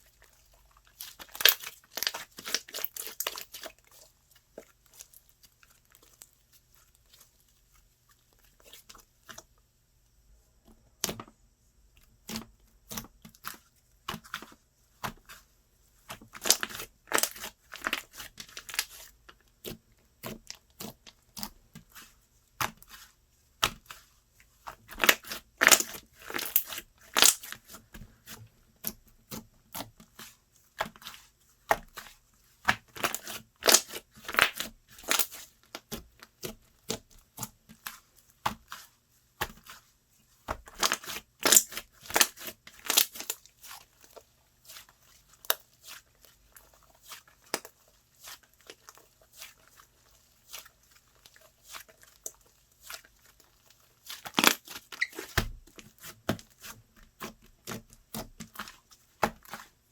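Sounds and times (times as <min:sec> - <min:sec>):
slime clicking and popping: 0:25.0 - 0:27.5, 0:32.7 - 0:35.4, 0:40.7 - 0:43.3.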